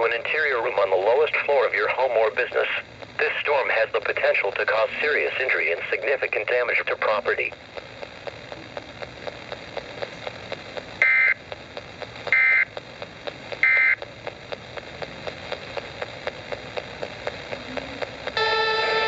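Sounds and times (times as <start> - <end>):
harsh data bursts: 0.0 - 19.0
radio hiss: 0.0 - 19.0
faint clicking: 1.3 - 18.4
music: 18.4 - 19.0.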